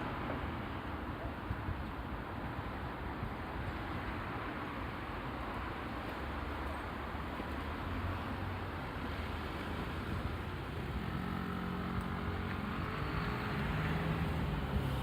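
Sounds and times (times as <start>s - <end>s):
hum of passing cars: 4.0s - 15.0s
nearby vehicle engine: 10.8s - 15.0s.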